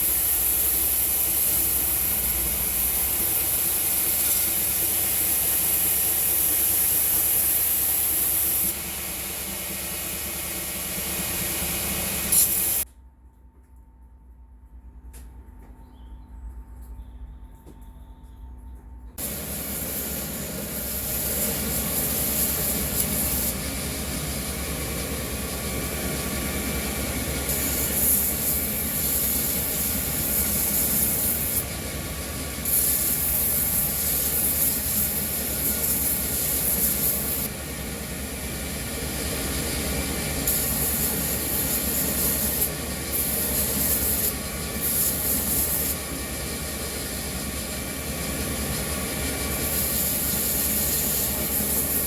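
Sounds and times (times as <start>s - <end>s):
belt grinder running: 0.0s - 12.8s, 19.2s - 52.0s
high hiss of blade grinding: 0.0s - 12.8s, 19.2s - 52.0s.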